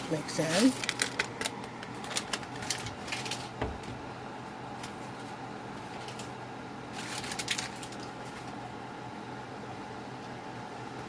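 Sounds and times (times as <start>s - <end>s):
paper packet crinkling: 0.0s - 3.9s, 4.7s - 8.6s
steady low hum: 0.0s - 11.0s.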